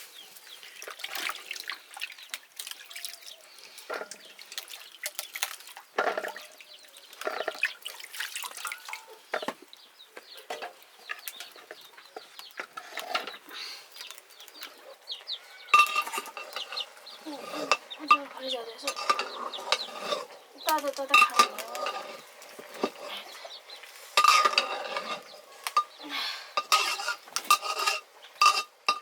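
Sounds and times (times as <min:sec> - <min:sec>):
water splashing and sloshing: 0:00.2 - 0:29.0
knocks and clinks: 0:15.8 - 0:20.3, 0:21.0 - 0:23.1, 0:24.2 - 0:26.0, 0:26.6 - 0:29.0.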